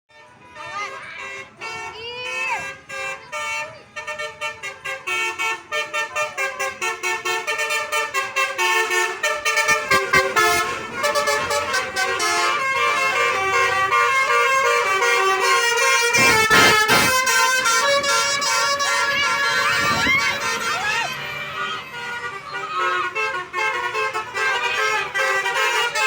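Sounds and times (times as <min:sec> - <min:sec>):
musical air horn melody: 0:02.6 - 0:26.0
rushing noise: 0:16.0 - 0:22.0.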